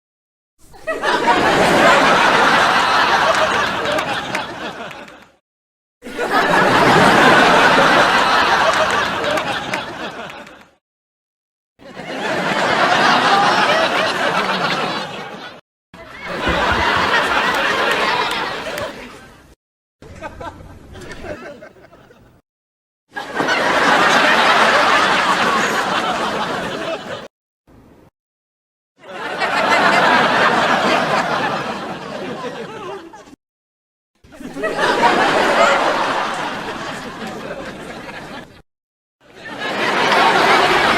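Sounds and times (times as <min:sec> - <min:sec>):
studio audience laughing: 0:00.8 - 0:05.4, 0:06.0 - 0:10.8, 0:11.8 - 0:19.3, 0:20.2 - 0:22.4, 0:23.1 - 0:27.3, 0:29.0 - 0:33.4, 0:34.3 - 0:38.6, 0:39.3 - 0:40.9.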